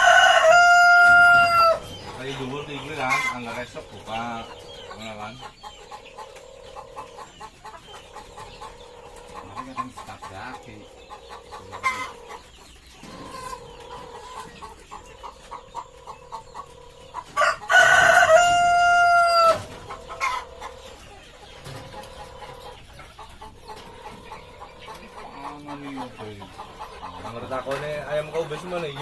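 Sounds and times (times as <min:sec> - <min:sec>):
rooster crowing: 0:00.0 - 0:01.8, 0:17.4 - 0:19.7
chickens clucking: 0:00.0 - 0:29.0.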